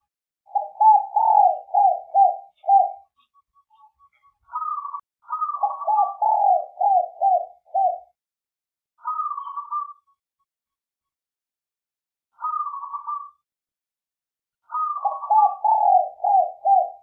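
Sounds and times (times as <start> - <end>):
dove cooing: 0.5 - 3.2, 4.5 - 8.2, 9.0 - 10.0, 12.4 - 13.4, 14.7 - 17.0.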